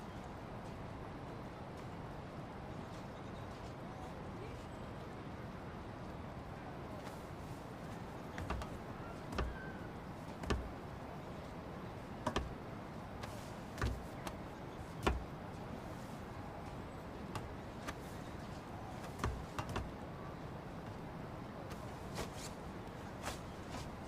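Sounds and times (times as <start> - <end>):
soft knocks and scuffs: 7.0 - 20.0, 21.7 - 24.0.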